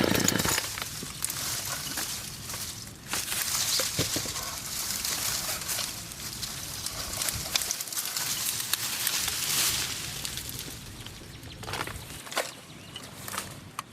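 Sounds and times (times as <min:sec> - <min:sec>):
twigs snapping: 0:00.0 - 0:12.6
branches and leaves rustling: 0:00.0 - 0:13.9.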